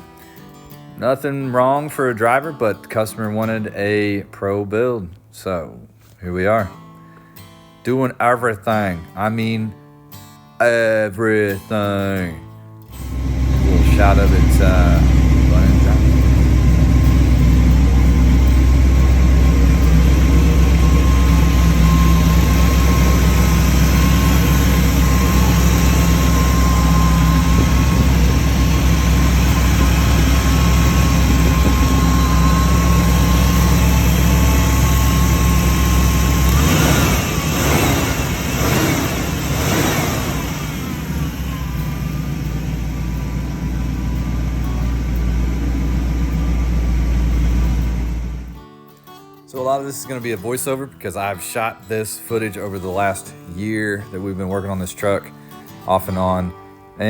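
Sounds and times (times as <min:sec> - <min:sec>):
car engine running: 0:13.1 - 0:48.6.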